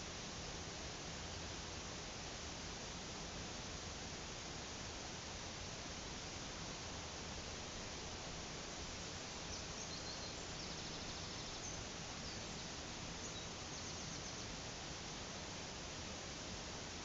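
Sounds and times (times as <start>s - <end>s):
faint bird chirps: 9.5s - 14.6s.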